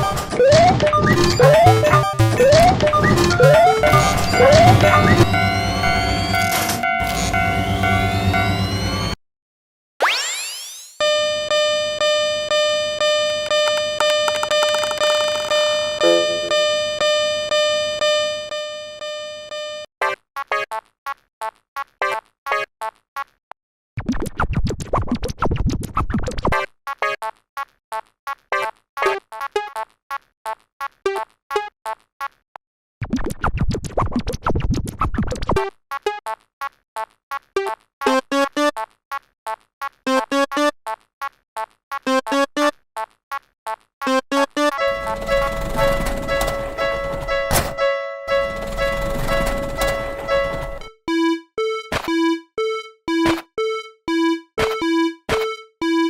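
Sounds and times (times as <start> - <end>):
synthesized crossing alarm bells: 0.0 - 9.2, 11.0 - 19.9, 44.6 - 56.0
short quick dings: 16.0 - 16.9.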